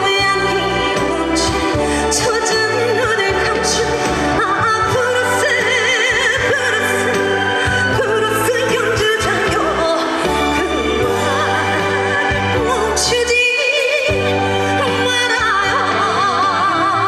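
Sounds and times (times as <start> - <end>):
backing track with bass line: 0.0 - 13.5
woman singing with vibrato: 0.0 - 17.0.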